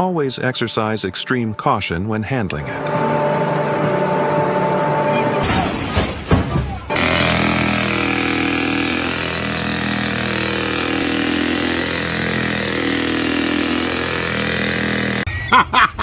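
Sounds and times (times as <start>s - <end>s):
engine idling: 2.5s - 5.5s, 6.9s - 15.3s.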